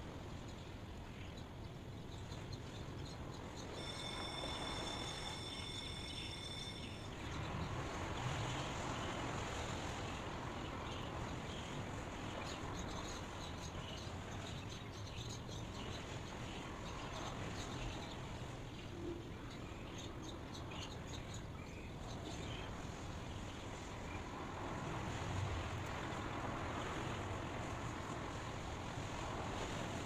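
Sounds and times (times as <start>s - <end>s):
hiss-like outdoor ambience: 0.0s - 30.0s
faint short high chirps: 3.7s - 7.2s
steady high tones: 3.7s - 7.3s.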